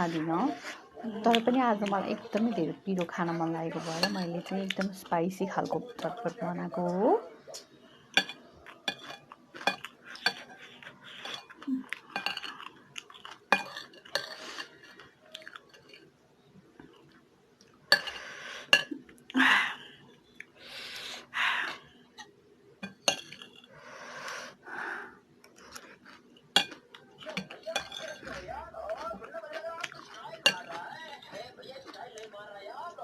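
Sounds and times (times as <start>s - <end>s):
spoon clinking against a dish: 3.8s - 5.0s, 8.1s - 16.0s, 17.9s - 19.0s, 22.8s - 23.7s, 26.5s - 32.3s
crunching while eating: 8.2s - 16.1s, 25.4s - 32.4s.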